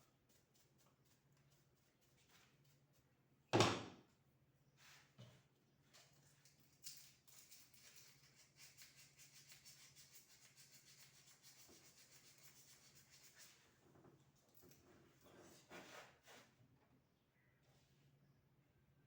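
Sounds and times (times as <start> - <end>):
rapid scratching strokes: 7.8 - 13.6.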